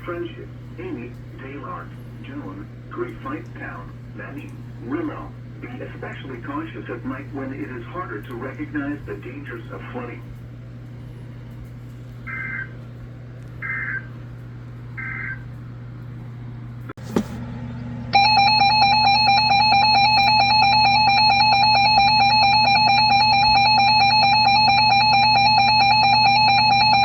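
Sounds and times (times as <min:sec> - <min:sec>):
loud steady attention tone: 0:18.0 - 0:27.0.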